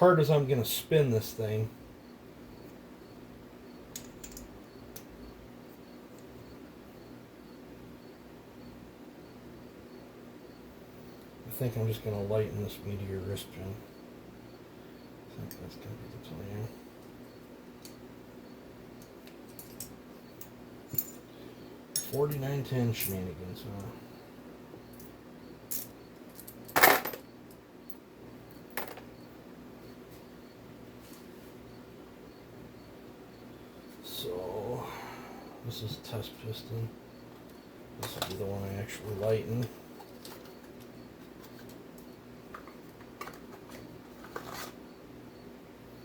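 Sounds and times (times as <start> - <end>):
low electrical hum: 0.0 - 46.0
small metal parts clinking: 3.9 - 5.1, 19.0 - 21.3, 21.9 - 23.9, 24.9 - 28.0, 40.0 - 41.8.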